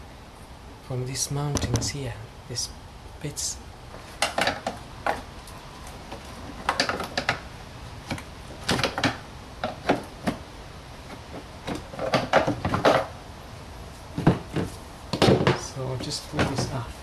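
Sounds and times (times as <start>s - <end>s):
plastic knocks and clatters: 11.6s - 13.1s, 14.2s - 16.8s.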